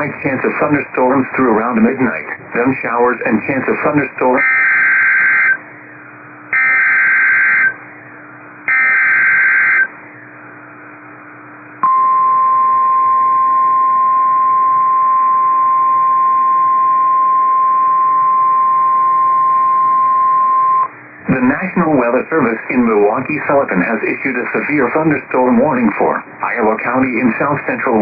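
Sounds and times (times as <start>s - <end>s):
steady warning alarm tone: 4.4s - 5.6s, 6.5s - 8.1s, 8.7s - 10.2s, 11.8s - 20.9s.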